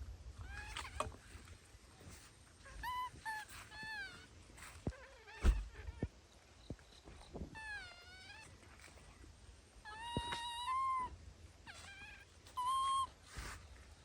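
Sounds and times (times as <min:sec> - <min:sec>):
baby monkey crying: 0:02.7 - 0:04.3, 0:09.9 - 0:13.2.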